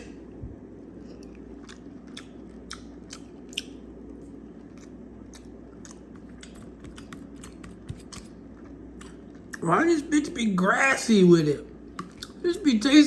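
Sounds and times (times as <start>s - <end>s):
person chewing: 0.0s - 9.6s, 12.0s - 12.6s
steady low hum: 0.0s - 13.0s
soft mouth clicks: 1.2s - 3.8s.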